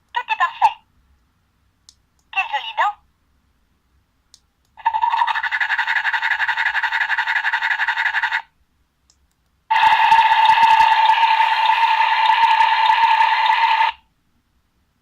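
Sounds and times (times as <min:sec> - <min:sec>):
toy buzzing sound effect: 0:04.8 - 0:08.5, 0:09.7 - 0:14.0.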